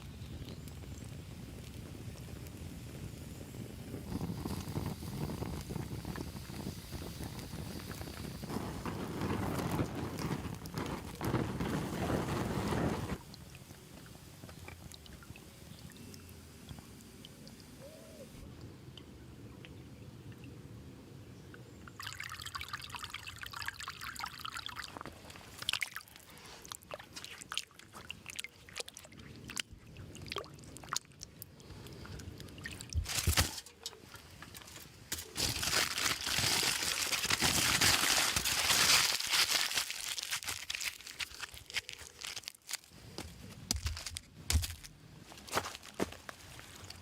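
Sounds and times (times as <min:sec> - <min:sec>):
liquid pouring and trickling: 0:21.9 - 0:31.2.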